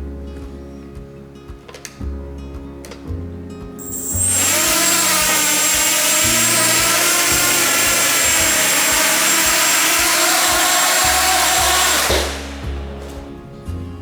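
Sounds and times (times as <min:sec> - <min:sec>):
drone propellers buzzing: 0:03.8 - 0:13.4.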